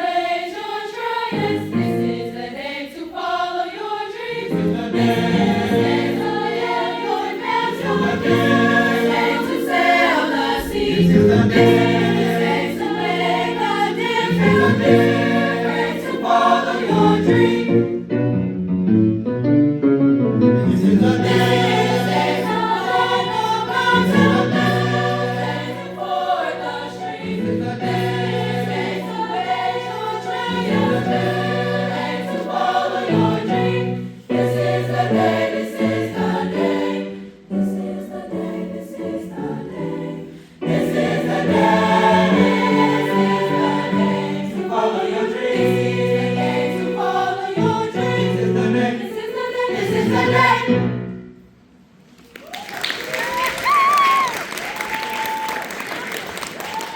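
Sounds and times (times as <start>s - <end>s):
choir singing gospel song: 0.0s - 18.1s, 20.7s - 51.2s.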